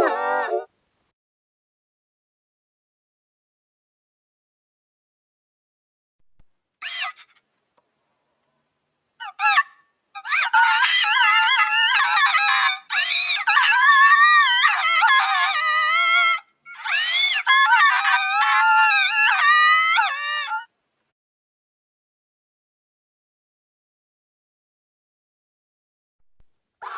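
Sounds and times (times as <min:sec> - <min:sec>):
cartoon girl crying wails: 0:00.0 - 0:00.7, 0:06.8 - 0:07.3, 0:09.2 - 0:20.7.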